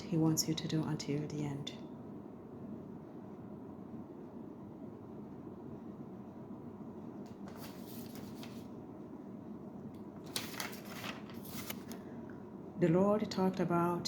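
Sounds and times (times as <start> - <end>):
low room hum: 0.0 - 14.0
paper rustling: 7.4 - 8.7, 10.2 - 12.1.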